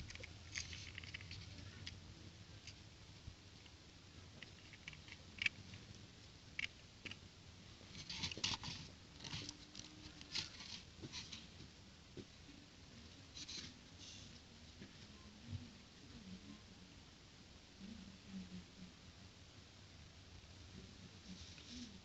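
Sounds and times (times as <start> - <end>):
crackly ticking and rustling: 0.0 - 12.3.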